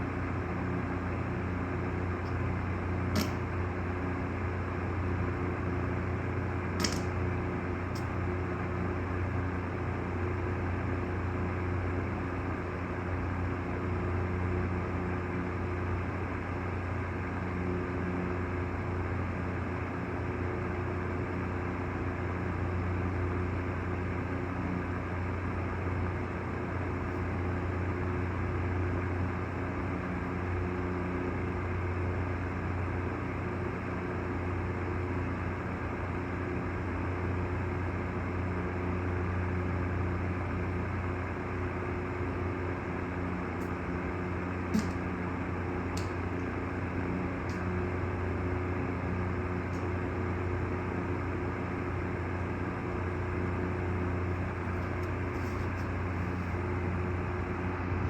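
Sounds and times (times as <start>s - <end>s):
steady machine hum: 0.0s - 58.0s
short clicks: 3.2s - 3.5s, 6.8s - 7.2s, 44.7s - 45.1s.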